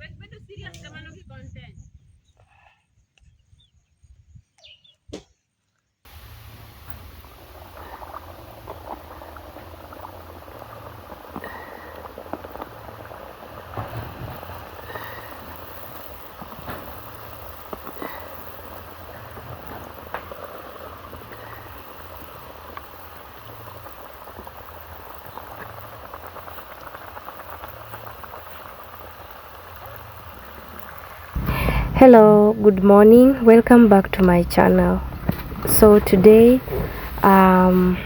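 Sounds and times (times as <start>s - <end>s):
dough deep-frying in oil: 6.1s - 32.0s.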